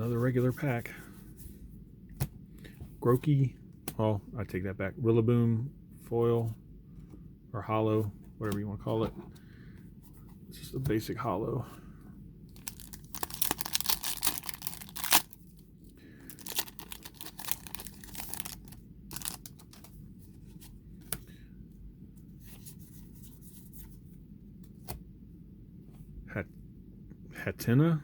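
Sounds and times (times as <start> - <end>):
foil wrapper tearing and crinkling: 12.6 - 15.4, 16.3 - 19.8.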